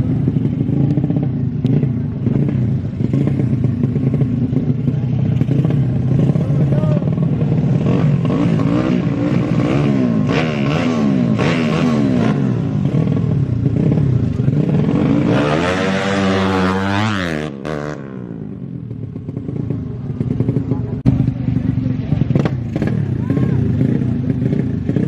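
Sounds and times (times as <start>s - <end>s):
motorcycle engines revving: 0.0s - 25.0s.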